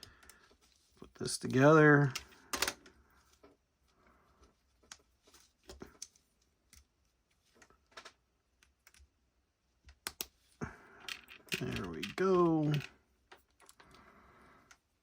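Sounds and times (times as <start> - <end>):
plastic pieces clicking together: 9.9 - 10.3, 11.0 - 13.9.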